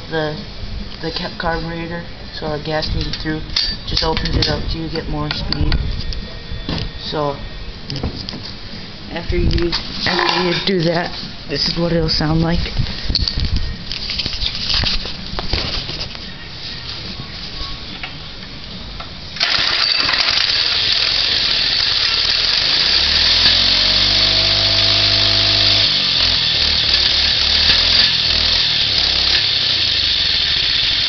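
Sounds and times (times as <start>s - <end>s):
mini bike engine revving: 19.4s - 31.0s.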